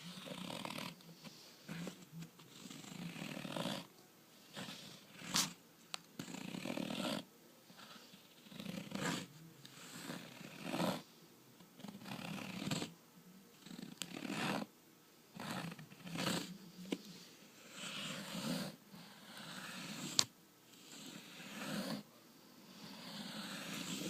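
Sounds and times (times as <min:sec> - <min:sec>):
soft rustling or scratching: 0:00.0 - 0:11.1.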